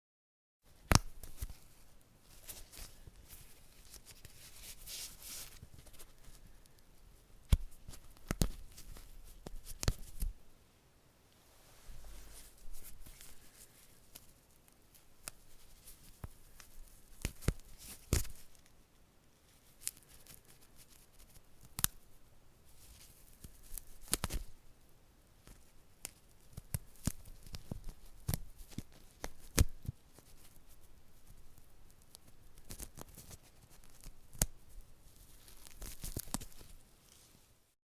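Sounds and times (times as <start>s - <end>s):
light scraping and rustling: 11.4s - 14.4s.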